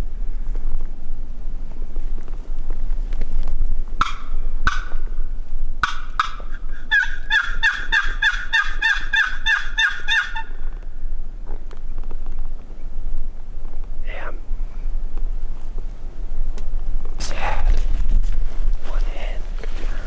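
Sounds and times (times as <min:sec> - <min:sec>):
turkey calling: 0:04.0 - 0:05.2, 0:05.8 - 0:10.8.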